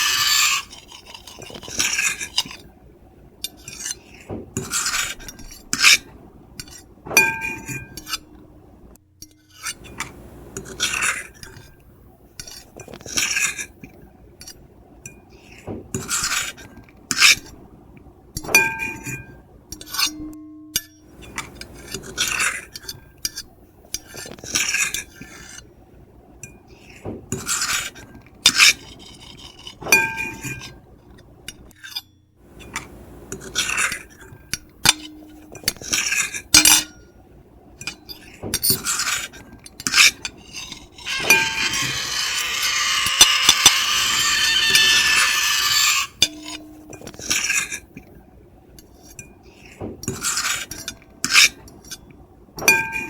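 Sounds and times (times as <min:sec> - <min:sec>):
fork and knife scraping plate: 0:00.0 - 0:02.7, 0:03.5 - 0:08.3, 0:09.4 - 0:11.8, 0:12.4 - 0:13.8, 0:15.4 - 0:17.6, 0:21.2 - 0:25.7, 0:26.8 - 0:30.8, 0:32.6 - 0:37.1, 0:37.8 - 0:48.0, 0:49.0 - 0:52.0
plate clinking: 0:06.6 - 0:08.3, 0:18.4 - 0:23.4, 0:29.8 - 0:30.8, 0:32.6 - 0:37.1, 0:39.8 - 0:47.8, 0:52.6 - 0:53.0.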